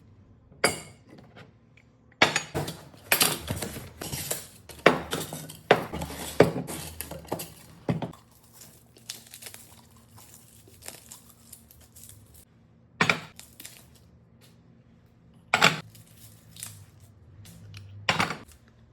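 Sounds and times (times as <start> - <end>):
glass jars knocking and clinking: 0.6 - 1.2, 2.2 - 11.1, 13.0 - 13.4, 15.6 - 15.9, 18.1 - 18.5.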